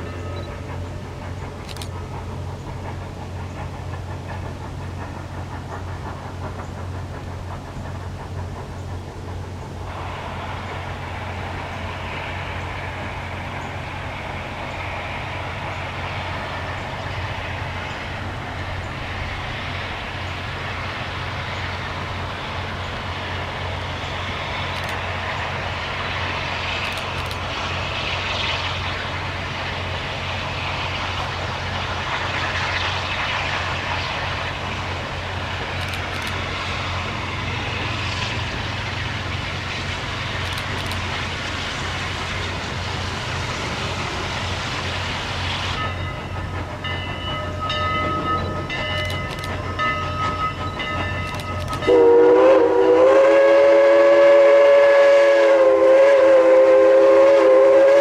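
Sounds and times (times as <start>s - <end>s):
train rumbling by: 0.0s - 58.0s
sharp clicks: 35.7s - 36.5s, 40.3s - 41.2s, 51.2s - 51.8s.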